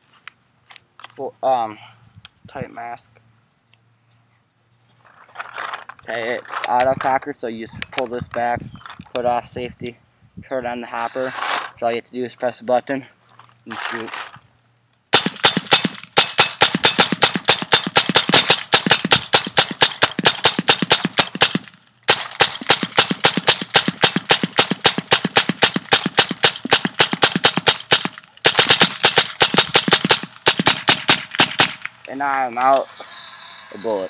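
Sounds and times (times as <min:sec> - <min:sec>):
paintball marker rapid firing: 0:15.1 - 0:31.9.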